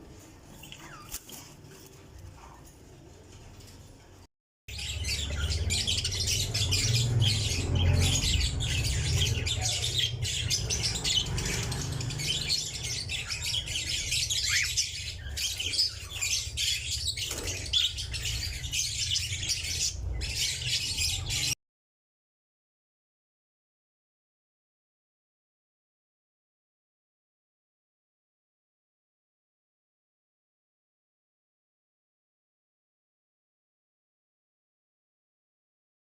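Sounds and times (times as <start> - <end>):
birds chirping: 4.7 - 21.6.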